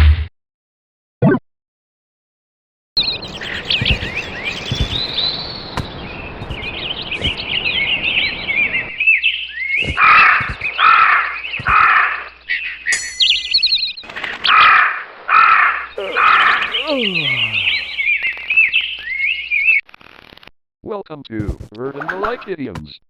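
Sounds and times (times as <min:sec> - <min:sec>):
songbirds chirping: 0:03.0 - 0:14.5, 0:15.9 - 0:19.7
crow cawing: 0:14.6 - 0:18.0.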